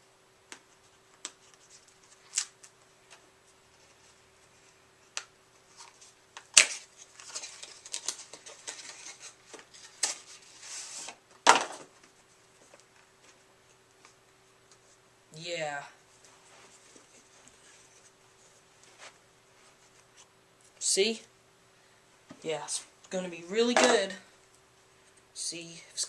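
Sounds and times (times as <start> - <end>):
plastic packaging crinkling: 6.5 - 11.1.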